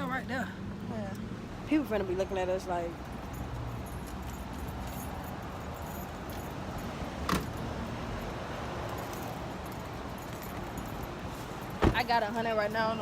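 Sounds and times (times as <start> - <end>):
small metal jingling: 2.9 - 13.0.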